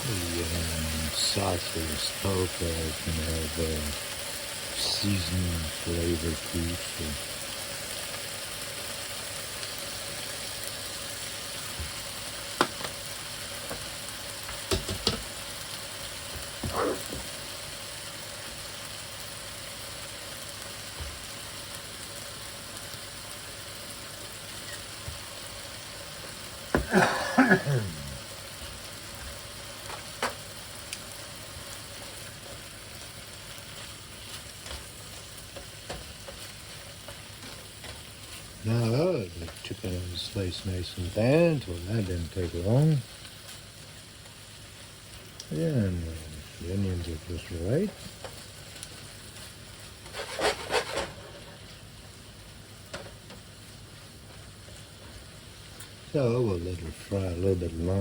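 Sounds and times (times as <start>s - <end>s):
chicken and onion sizzling in pan: 0.0s - 58.0s
stirring clicks and scrapes: 50.0s - 51.8s.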